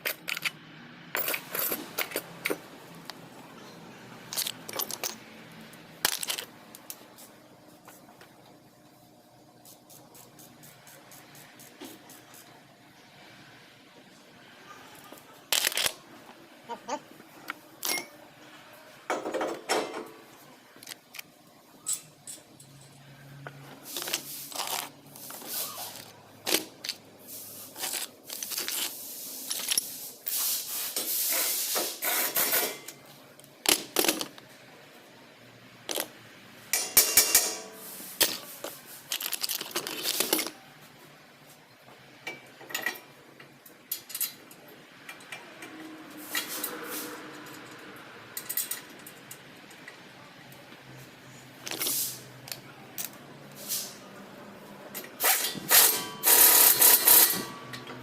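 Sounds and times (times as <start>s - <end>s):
metal tools clinking and scraping: 0.0s - 2.6s, 4.3s - 5.3s, 6.0s - 7.0s, 17.8s - 18.2s, 21.8s - 23.1s, 27.7s - 30.5s, 36.7s - 40.6s, 43.8s - 50.0s, 54.9s - 58.0s.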